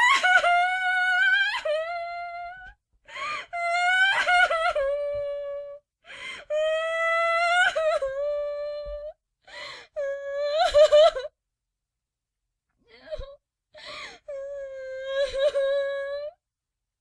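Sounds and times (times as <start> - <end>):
gasping sobbing inhales: 13.8 - 14.3.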